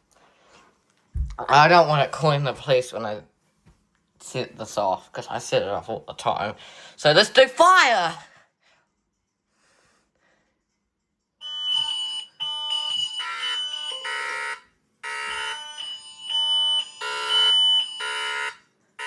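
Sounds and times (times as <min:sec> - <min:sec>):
electronic fire alarm tone: 0:11.4 - 0:18.6.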